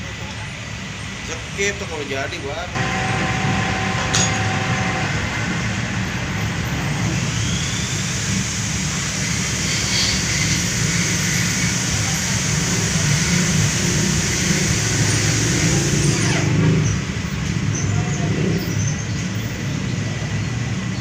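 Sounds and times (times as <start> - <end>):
hiss of lathe cutting: 2.8 - 6.0, 6.9 - 16.6
metal lathe hum: 2.8 - 7.6, 9.1 - 16.4.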